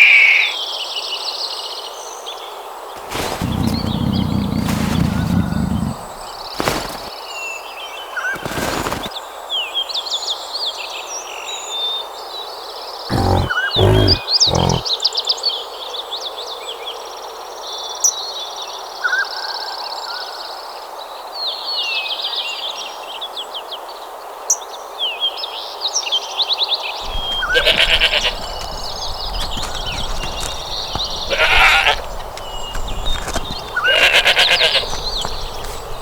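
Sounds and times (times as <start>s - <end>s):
background rustle: 3.0s - 7.2s, 8.4s - 9.1s, 27.0s - 36.0s
animal short low calls: 13.1s - 14.8s, 27.0s - 36.0s
birds chirping and trilling: 27.0s - 36.0s.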